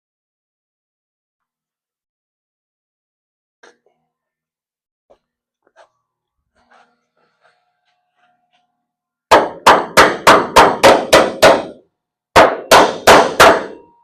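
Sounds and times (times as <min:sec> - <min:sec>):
hammer striking metal: 0:09.3 - 0:14.0.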